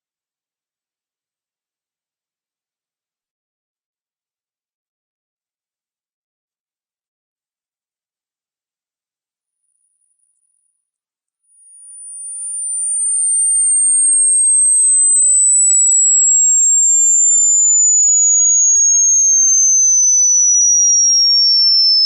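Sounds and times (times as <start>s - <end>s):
high electronic tone gliding down: 12.2s - 22.0s.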